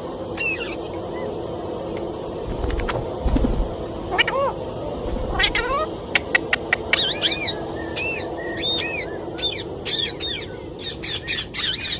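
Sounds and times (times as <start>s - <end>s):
parrot chirping calls: 0.3s - 1.4s, 4.1s - 4.6s, 5.3s - 11.9s.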